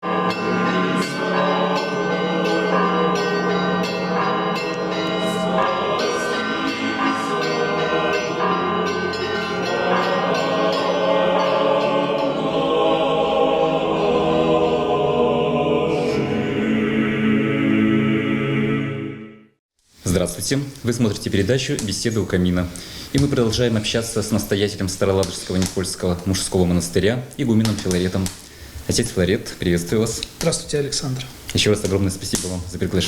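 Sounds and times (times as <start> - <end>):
bells ringing: 0.0 - 12.8
choir singing sustained chords: 0.0 - 19.6.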